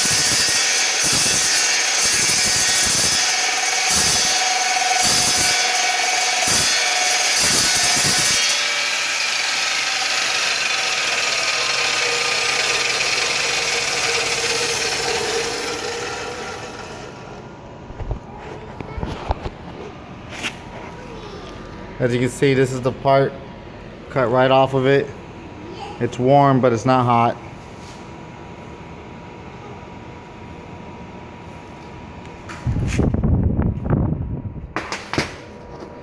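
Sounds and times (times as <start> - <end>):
chop saw grinding through steel: 0.0 - 17.5
saw running: 0.0 - 17.6.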